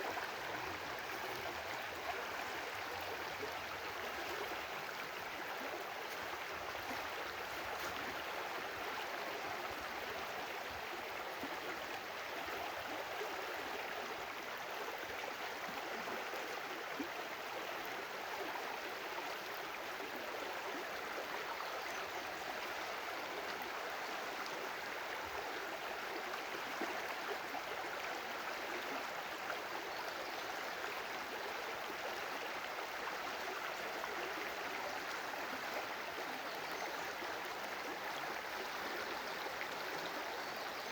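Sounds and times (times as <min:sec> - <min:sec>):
running water flowing: 0:00.0 - 0:12.0.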